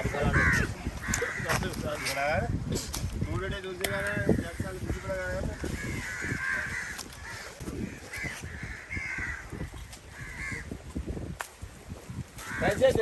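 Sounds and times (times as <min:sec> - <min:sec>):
crows cawing: 0:00.0 - 0:02.1, 0:05.5 - 0:10.8, 0:12.4 - 0:13.0.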